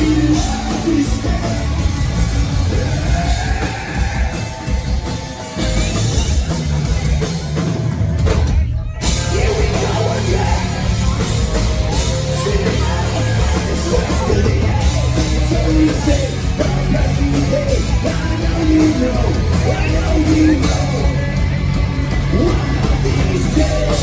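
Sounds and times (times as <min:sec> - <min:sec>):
rock band playing: 0:00.0 - 0:24.0
person singing: 0:09.1 - 0:24.0.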